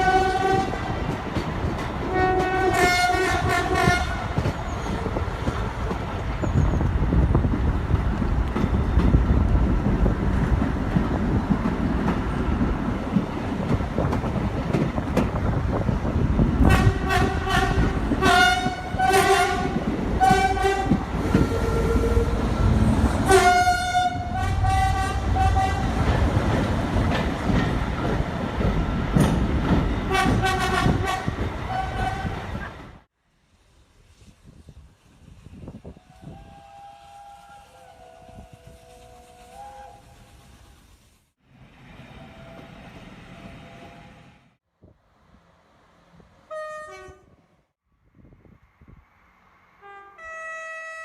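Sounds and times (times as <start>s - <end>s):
train horn blasts: 0.0s - 0.9s, 2.1s - 4.4s, 16.6s - 22.4s, 23.2s - 26.0s, 30.1s - 32.4s, 36.0s - 40.2s, 46.5s - 47.4s, 49.8s - 51.0s
train rumbling: 0.0s - 47.7s.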